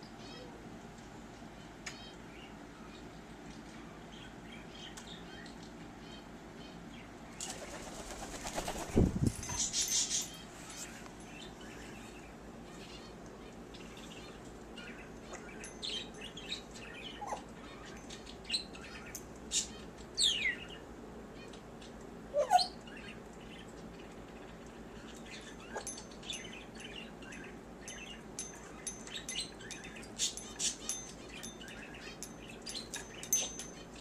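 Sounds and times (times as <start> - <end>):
parrot wing flapping: 7.4 - 9.8.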